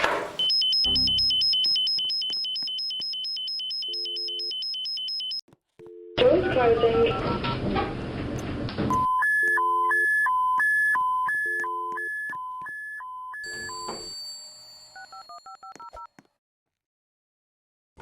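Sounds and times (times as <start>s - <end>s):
two-tone alarm beep: 0.4s - 5.4s, 8.9s - 14.1s
telephone dialing tones: 0.4s - 7.6s, 8.9s - 14.1s.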